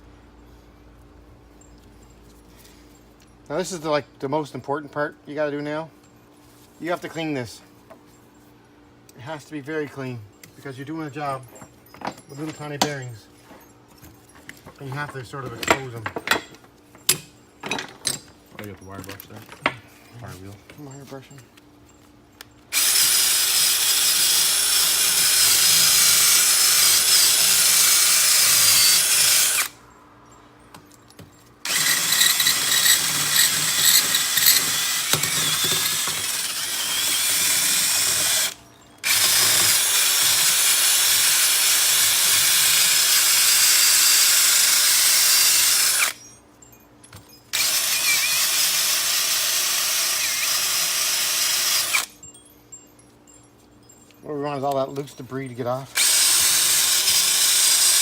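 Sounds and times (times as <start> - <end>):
wire wheel scrubbing steel: 22.7 - 29.8, 31.6 - 42.9.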